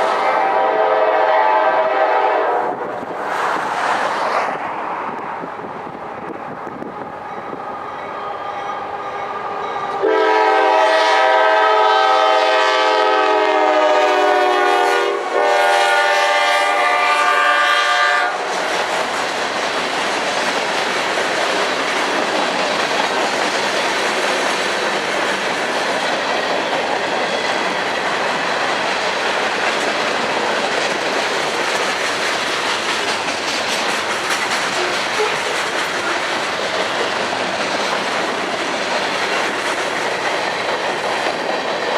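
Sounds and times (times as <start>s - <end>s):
locomotive air horn blasts: 0.0s - 2.8s, 10.0s - 18.5s
train wheels rumbling on rail: 0.0s - 41.9s.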